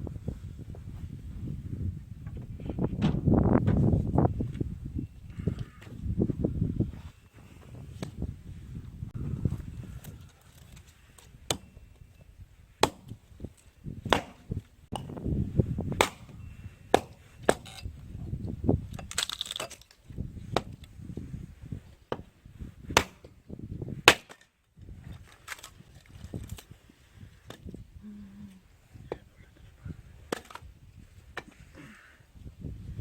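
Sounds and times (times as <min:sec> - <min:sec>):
firewood chopping knocks: 0:12.8 - 0:13.2, 0:14.1 - 0:15.1, 0:16.0 - 0:17.8.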